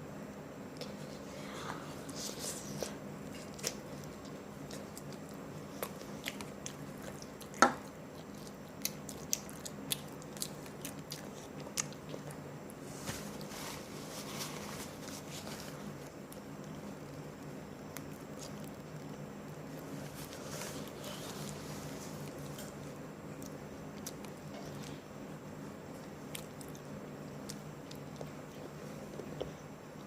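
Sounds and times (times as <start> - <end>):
chewing with wet mouth sounds: 3.3 - 13.5, 15.0 - 25.0.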